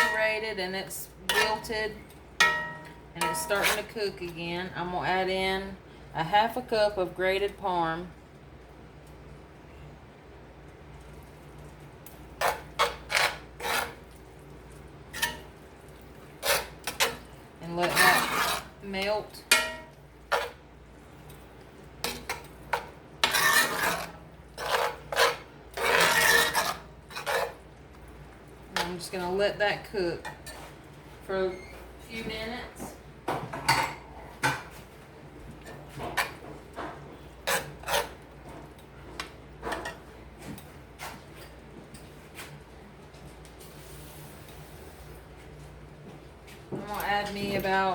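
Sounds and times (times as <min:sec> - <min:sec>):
utensil clinking on pan: 0:02.4 - 0:03.9
utensil scraping pan bottom: 0:16.4 - 0:20.6, 0:22.0 - 0:27.6.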